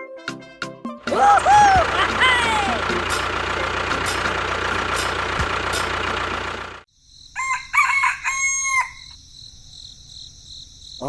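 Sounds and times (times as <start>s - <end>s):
rooster crowing: 1.1s - 2.8s, 7.4s - 9.2s.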